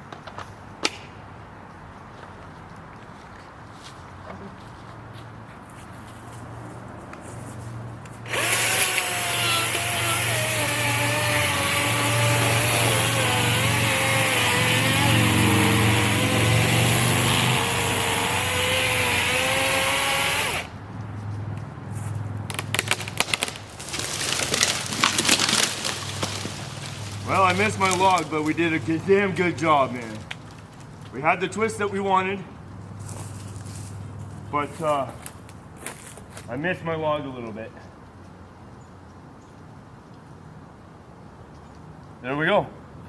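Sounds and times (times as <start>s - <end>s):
electric chainsaw cutting wood: 8.2s - 20.7s, 22.8s - 28.9s
tree cracking and crashing down: 8.3s - 20.6s, 22.5s - 30.9s.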